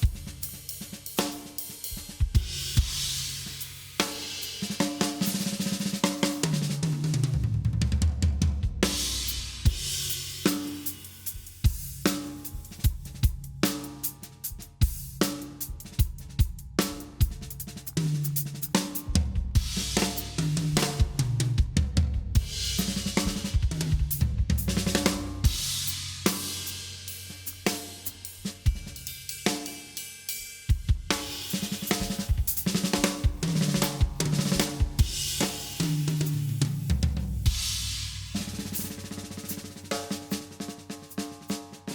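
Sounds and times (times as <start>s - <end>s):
drum beat: 0.0s - 29.6s, 30.7s - 41.9s
tom drum fill: 6.5s - 10.3s, 19.1s - 26.4s.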